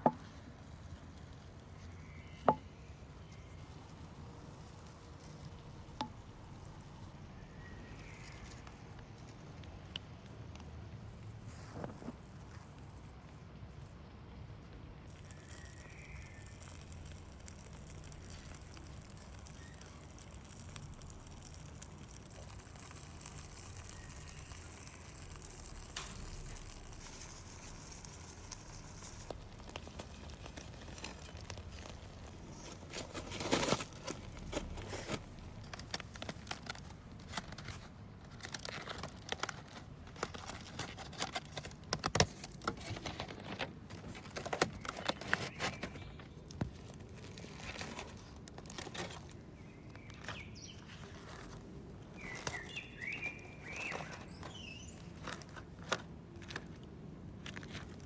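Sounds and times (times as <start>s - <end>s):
foil and paper crinkling: 15.2s - 58.0s.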